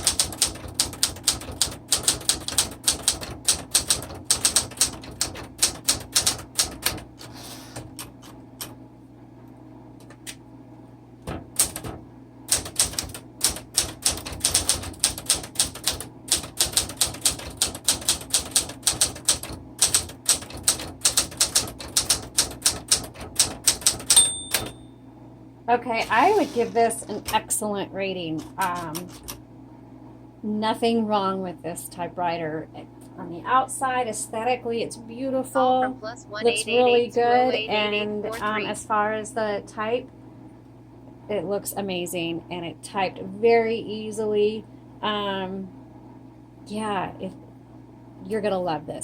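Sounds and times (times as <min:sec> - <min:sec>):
manual typewriter key strikes: 0:00.0 - 0:07.0, 0:11.3 - 0:24.8.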